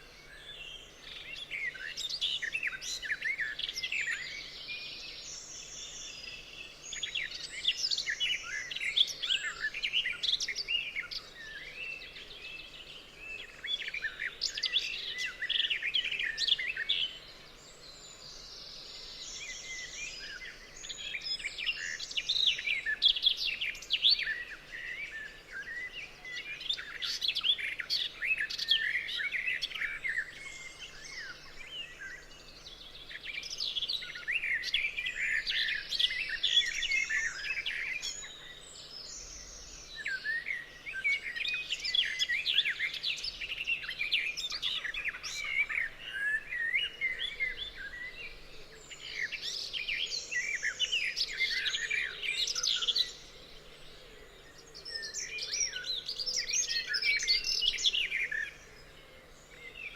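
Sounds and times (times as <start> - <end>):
songbirds chirping and trilling: 0.0 - 59.9.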